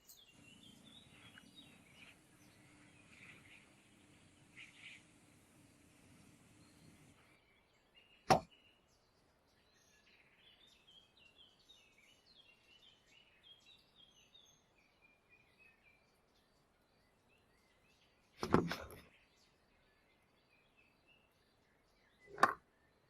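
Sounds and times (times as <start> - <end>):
small birds chirping: 0.0 - 23.0
sharp tap: 8.3 - 8.5.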